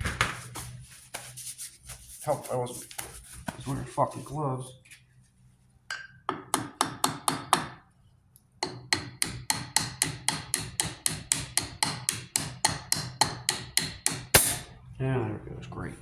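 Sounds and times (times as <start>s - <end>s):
hammer tapping on metal: 5.9s - 7.8s, 8.6s - 14.6s.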